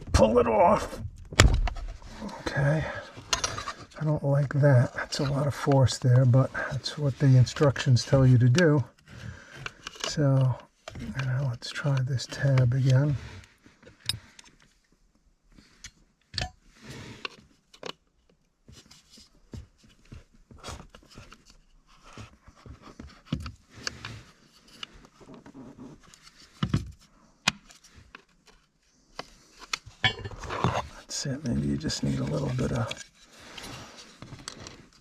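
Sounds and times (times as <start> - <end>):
hands working pedal assembly: 27.5 - 30.9.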